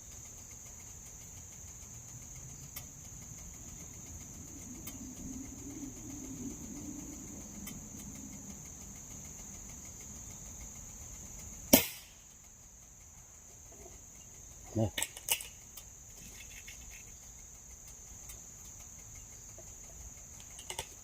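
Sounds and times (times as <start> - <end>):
crickets droning: 0.0 - 21.0
air rifle shot: 11.7 - 12.2.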